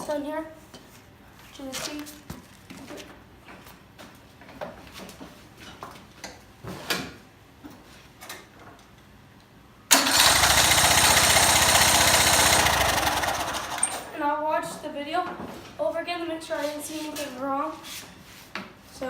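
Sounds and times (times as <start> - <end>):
lawn mower engine cranking: 9.9 - 14.2.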